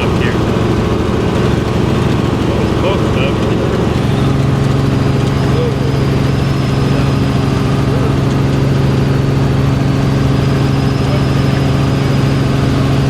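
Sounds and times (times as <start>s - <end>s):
helicopter engine and rotor drone: 0.0s - 13.0s.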